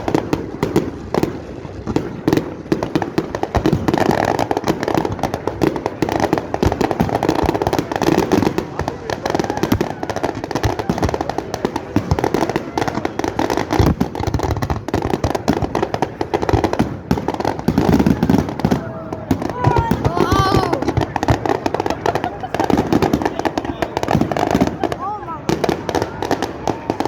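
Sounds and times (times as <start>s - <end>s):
fireworks and firecrackers popping: 0.0s - 27.0s.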